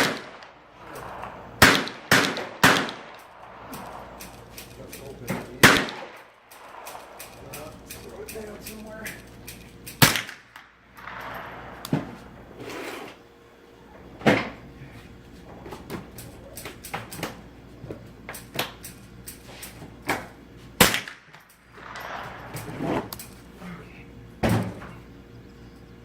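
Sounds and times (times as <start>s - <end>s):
gunshot echo: 0.0s - 4.2s, 5.3s - 7.8s, 10.0s - 12.2s
faint distant gunshots: 0.0s - 4.5s, 5.3s - 8.2s
loud rifle shots: 0.0s - 8.6s, 9.7s - 12.6s, 20.8s - 23.0s.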